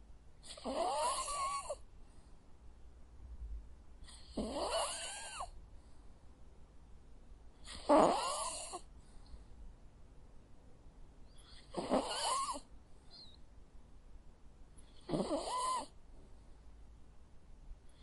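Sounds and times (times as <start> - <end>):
dog snoring: 0.4 - 1.8, 4.0 - 5.6, 7.6 - 8.9, 11.4 - 13.3, 14.8 - 16.0.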